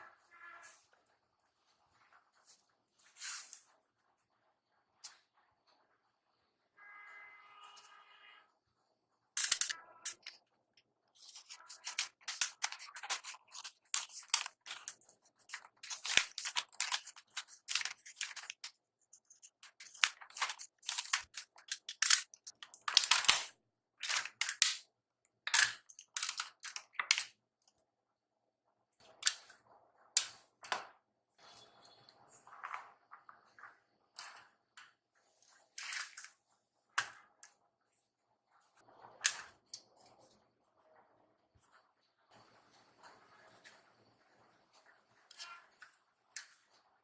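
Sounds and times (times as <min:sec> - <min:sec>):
plastic toy parts clicking: 0:09.4 - 0:10.4, 0:11.2 - 0:24.8, 0:25.4 - 0:27.8, 0:29.1 - 0:29.5, 0:39.2 - 0:39.8, 0:45.3 - 0:46.6.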